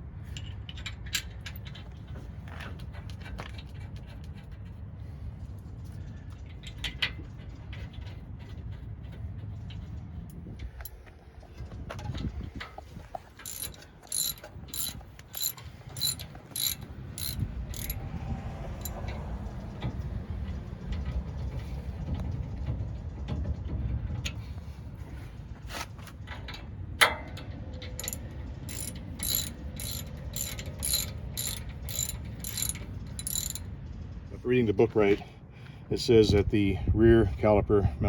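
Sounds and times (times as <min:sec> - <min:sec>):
socket ratchet clicking: 0:13.4 - 0:18.0, 0:27.9 - 0:33.6.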